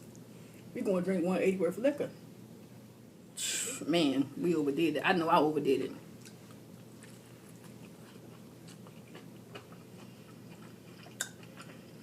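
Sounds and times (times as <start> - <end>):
person chewing: 6.2 - 12.0
wet mouth clicks and smacks: 11.1 - 11.4.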